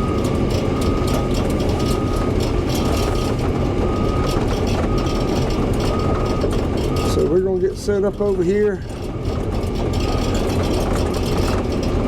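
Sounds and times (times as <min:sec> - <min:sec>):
travel alarm beeping: 0:00.0 - 0:10.6
excavator diesel engine: 0:00.0 - 0:12.0.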